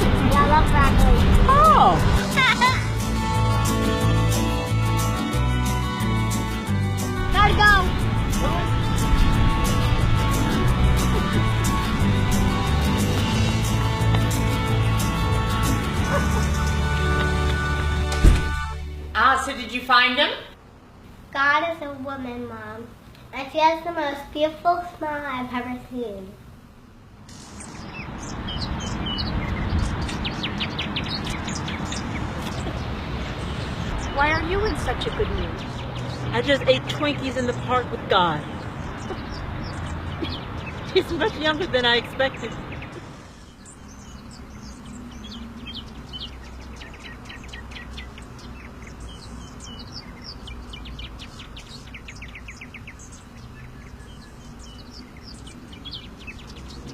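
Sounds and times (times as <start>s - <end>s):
steady low rumble: 0.0s - 3.5s, 6.9s - 17.1s
small birds chirping: 0.0s - 18.8s, 27.2s - 56.9s.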